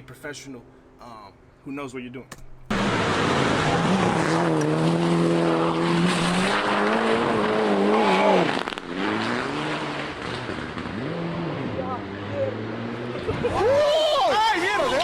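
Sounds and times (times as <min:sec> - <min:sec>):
rally car engine at high revs: 0:02.7 - 0:13.8.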